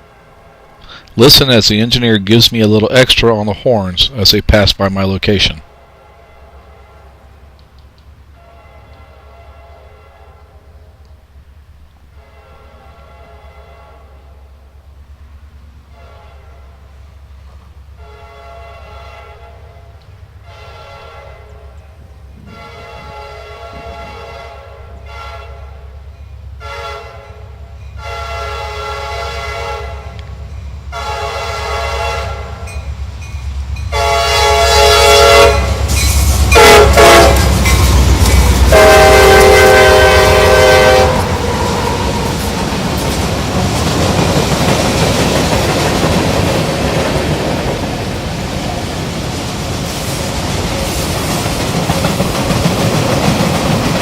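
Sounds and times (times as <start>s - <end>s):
locomotive engine rumble: 0.0s - 54.0s
locomotive air horn blasts: 5.7s - 7.6s, 8.3s - 11.0s, 12.1s - 14.5s, 15.9s - 17.0s, 17.9s - 26.0s, 26.6s - 30.2s, 30.9s - 32.8s, 33.9s - 37.7s, 38.7s - 42.4s.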